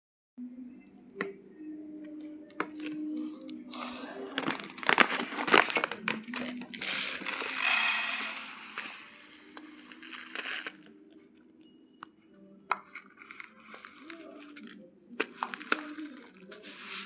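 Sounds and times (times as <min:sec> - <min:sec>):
rice packet crinkling: 0:04.4 - 0:10.7, 0:15.4 - 0:17.0
rattling rice grains: 0:06.8 - 0:10.8, 0:15.4 - 0:17.0.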